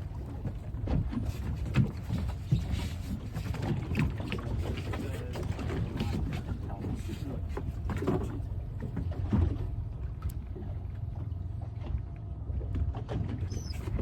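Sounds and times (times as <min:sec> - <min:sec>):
water slapping against hull: 0:00.0 - 0:14.0.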